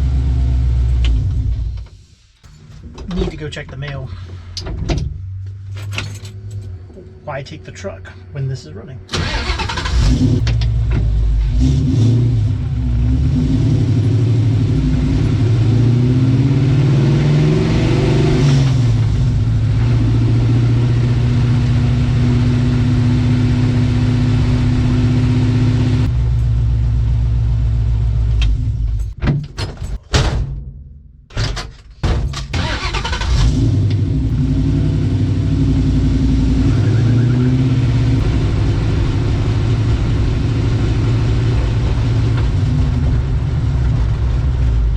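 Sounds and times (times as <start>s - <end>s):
car engine accelerating: 0.0s - 1.8s, 9.1s - 29.2s, 32.6s - 44.9s.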